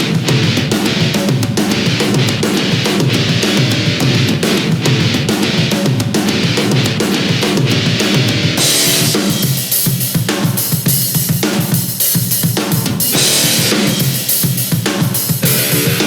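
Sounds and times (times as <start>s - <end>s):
distorted guitar: 0.0s - 9.7s, 13.1s - 16.0s
crashing cymbals: 0.0s - 16.0s
driving drum beat: 0.0s - 16.0s
loud rock music: 0.0s - 16.0s.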